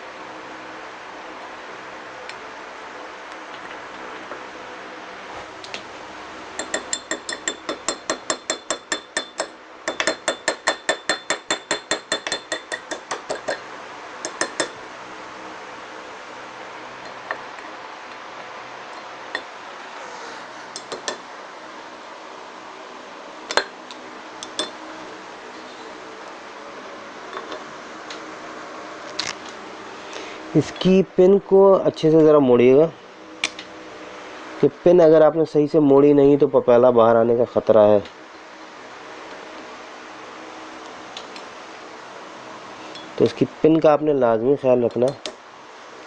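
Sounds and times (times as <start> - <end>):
metal-on-metal tapping: 6.6 - 13.6, 14.2 - 14.8, 20.8 - 21.2.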